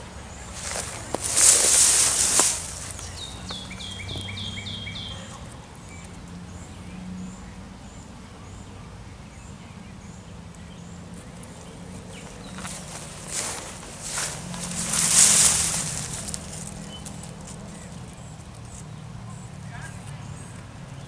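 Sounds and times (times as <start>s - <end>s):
songbird singing falling notes: 0.0s - 6.8s, 10.6s - 19.0s.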